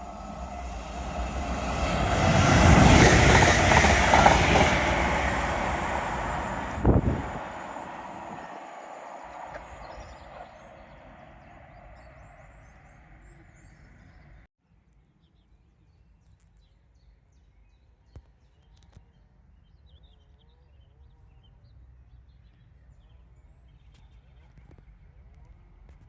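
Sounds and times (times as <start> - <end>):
birds chirping: 0.0 - 14.4
passing train: 0.0 - 14.5.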